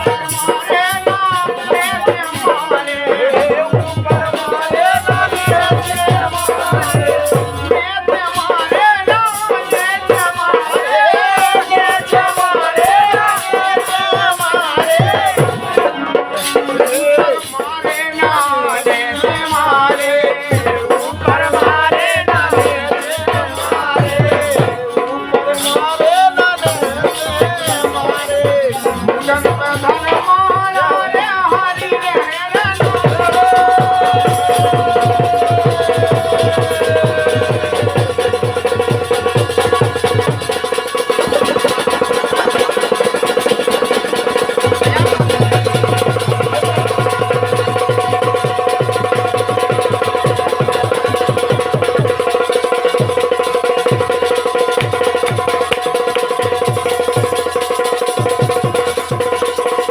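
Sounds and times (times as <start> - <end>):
rattling percussion and drum: 0.0 - 59.9
instrumental folk melody: 12.0 - 59.9.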